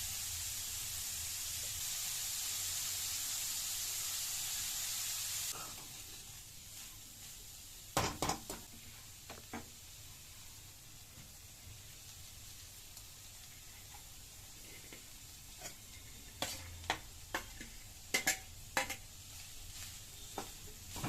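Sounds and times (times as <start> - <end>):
food frying in hot oil: 0.0 - 21.0.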